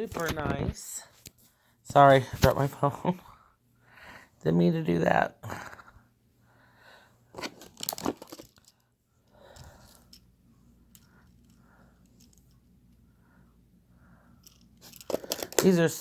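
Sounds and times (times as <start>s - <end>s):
handling rustling and clattering: 7.3s - 8.9s, 9.6s - 13.0s, 14.4s - 16.0s.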